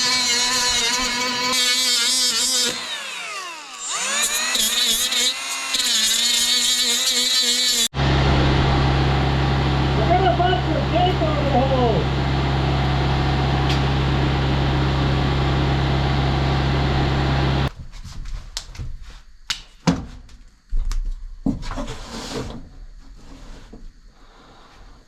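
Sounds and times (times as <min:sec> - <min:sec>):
shop machine humming: 0:08.0 - 0:17.7.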